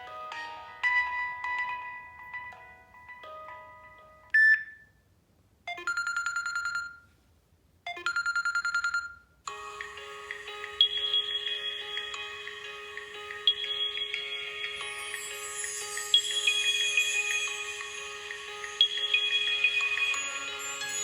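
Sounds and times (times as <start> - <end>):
ringtone melody: 0.0 - 4.8, 5.7 - 6.9, 7.9 - 21.0
short phone beep: 4.3 - 4.9, 5.7 - 7.1
phone chiming melody: 5.7 - 7.0, 7.9 - 21.0.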